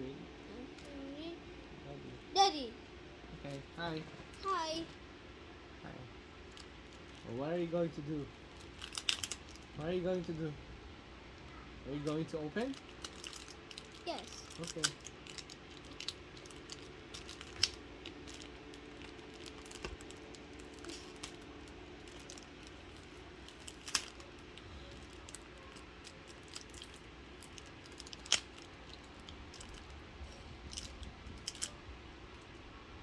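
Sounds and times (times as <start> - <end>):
faint steady hum: 0.0 - 33.0
card pack rustling and crinkling: 6.5 - 7.3, 8.1 - 10.4, 12.0 - 30.0, 30.6 - 31.8.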